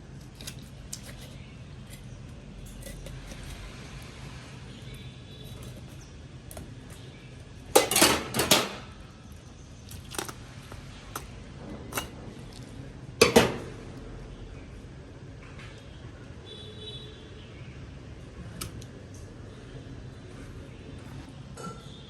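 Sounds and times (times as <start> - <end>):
dishes and utensils clattering: 7.7 - 9.0, 11.2 - 12.6, 13.2 - 13.8, 21.5 - 22.0.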